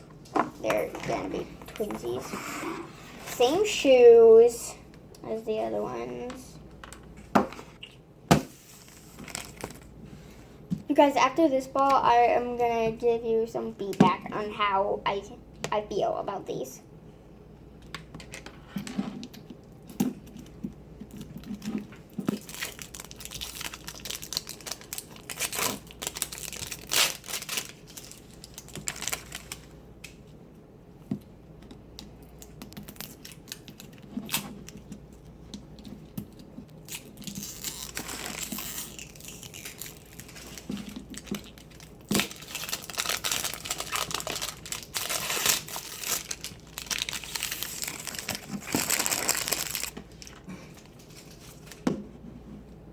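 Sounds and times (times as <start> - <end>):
plastic wrapping crinkling and tearing: 8.9 - 9.9, 20.2 - 30.2, 32.4 - 34.9, 36.3 - 51.8.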